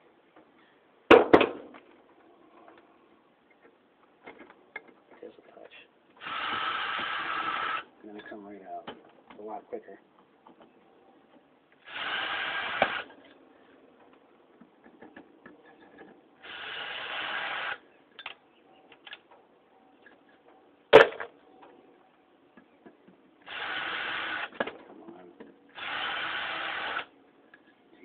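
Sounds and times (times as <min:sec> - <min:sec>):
power drill running in bursts: 0:23.5 - 0:24.5, 0:25.8 - 0:27.1.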